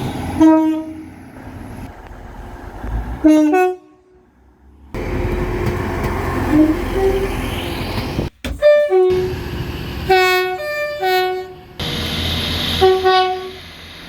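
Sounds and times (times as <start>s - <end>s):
passing train rumble: 0.0s - 14.0s
locomotive horn blasts: 0.4s - 1.0s, 3.2s - 4.2s, 5.0s - 7.9s, 8.6s - 12.0s, 12.7s - 13.7s.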